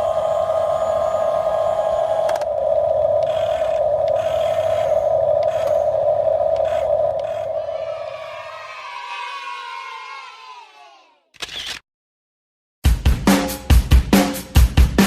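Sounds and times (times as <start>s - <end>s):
toy excavator high-pitched whine: 0.0s - 2.6s, 3.2s - 6.0s, 6.6s - 8.3s.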